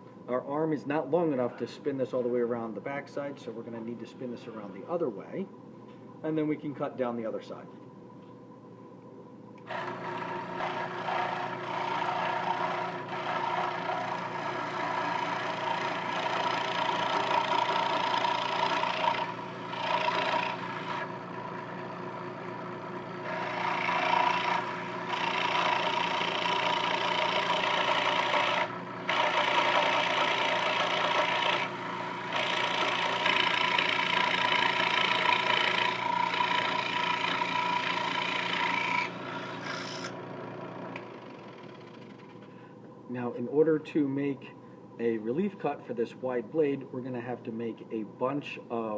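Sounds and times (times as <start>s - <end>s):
scroll saw cutting wood: 9.7s - 21.9s, 22.6s - 42.4s.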